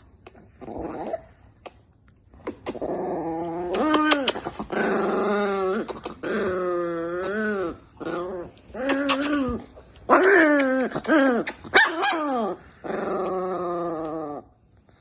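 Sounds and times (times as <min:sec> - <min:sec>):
small dog growling and whining: 0:00.0 - 0:15.0.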